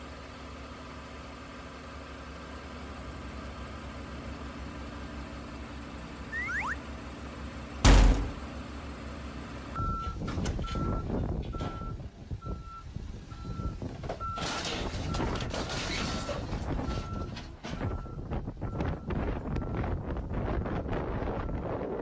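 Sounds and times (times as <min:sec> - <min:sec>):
low engine hum: 0:00.0 - 0:22.0
reversing alarm beeping: 0:06.3 - 0:06.8
loud thud: 0:07.8 - 0:08.4.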